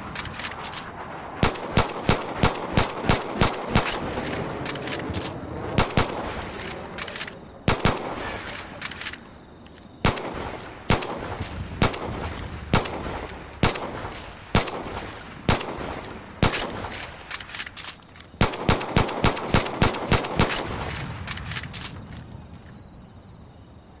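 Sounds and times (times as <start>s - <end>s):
pistol shots with echo: 1.4s - 8.9s, 10.0s - 17.1s, 18.4s - 21.5s.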